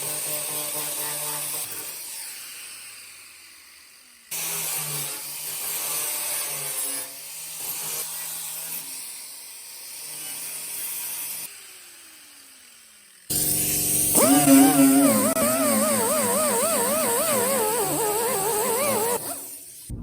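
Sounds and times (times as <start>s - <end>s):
power tool rasping on metal: 13.3s - 19.8s.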